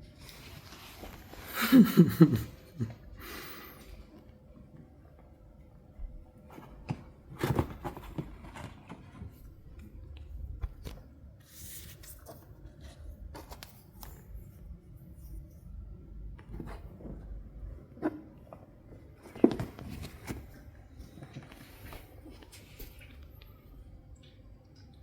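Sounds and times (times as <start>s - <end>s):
cats rustling in a basket: 0.0s - 2.3s, 6.4s - 14.6s, 16.4s - 23.6s
scratches and light knocks: 6.5s - 15.7s.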